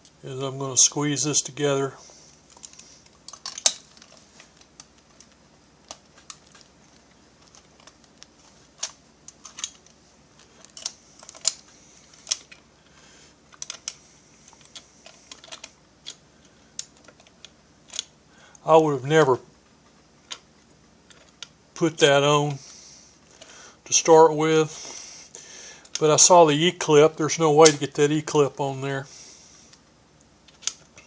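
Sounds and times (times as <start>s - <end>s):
small metal parts clicking: 2.5s - 6.7s, 7.4s - 9.9s, 10.6s - 12.6s, 13.5s - 16.2s.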